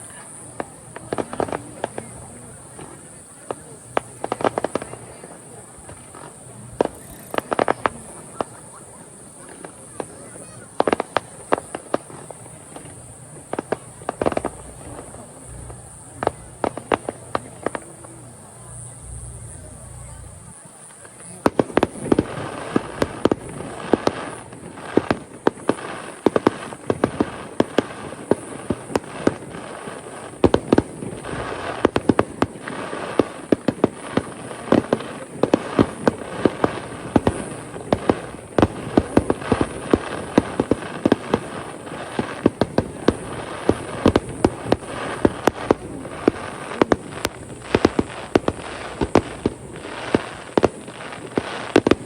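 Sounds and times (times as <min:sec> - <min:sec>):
fireworks bangs and crackling: 0:00.0 - 0:52.0.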